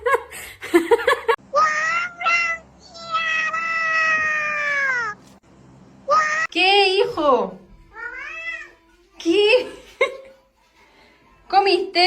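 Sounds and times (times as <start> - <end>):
cat meowing: 1.6 - 5.3, 7.9 - 9.1.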